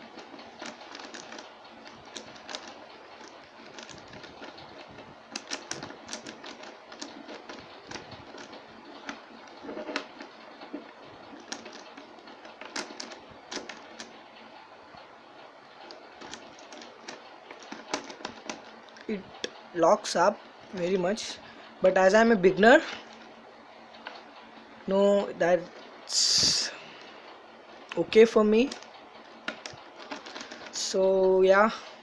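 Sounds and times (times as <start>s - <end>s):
puzzle cube faces clicking: 0.2s - 14.2s, 15.8s - 19.6s.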